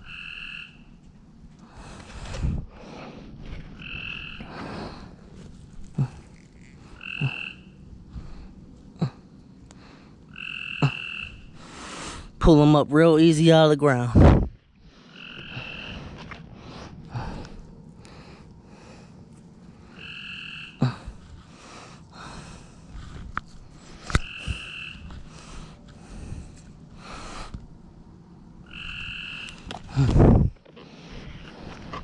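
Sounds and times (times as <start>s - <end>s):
raspy frog calls: 0.0s - 0.9s, 3.7s - 4.6s, 6.2s - 7.9s, 10.3s - 11.6s, 14.9s - 16.4s, 19.8s - 21.1s, 24.0s - 25.6s, 28.6s - 30.0s
frog two-tone call: 20.0s - 20.8s, 24.2s - 25.0s, 28.7s - 29.6s.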